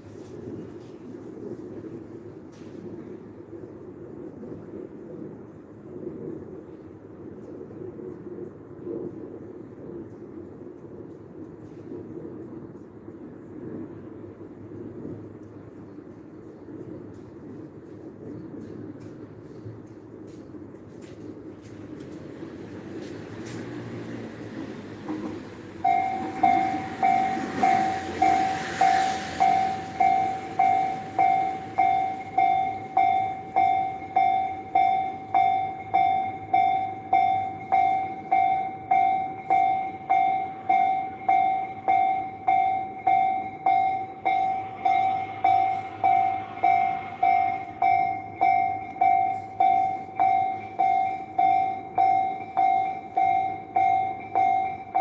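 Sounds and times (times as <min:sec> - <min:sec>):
rush of noise: 0:21.6 - 0:55.0
railroad crossing bell ringing: 0:23.4 - 0:55.0.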